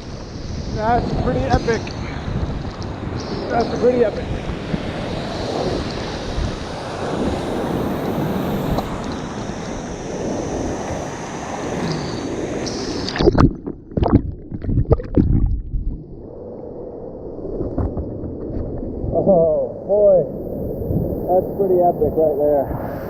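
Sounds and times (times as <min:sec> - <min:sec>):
thumps and splashes: 0:13.1 - 0:16.0.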